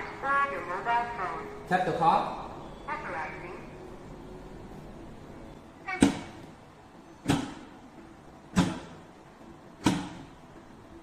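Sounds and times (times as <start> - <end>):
vending machine mechanical clunks: 5.9 - 6.6, 7.2 - 9.1, 9.8 - 10.4.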